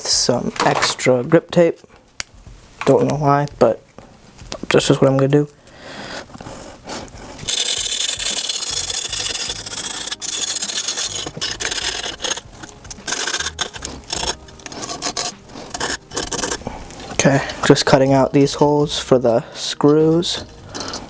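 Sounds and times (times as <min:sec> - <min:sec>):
grip tape rubbing rasp: 0:06.3 - 0:17.8, 0:20.3 - 0:21.0.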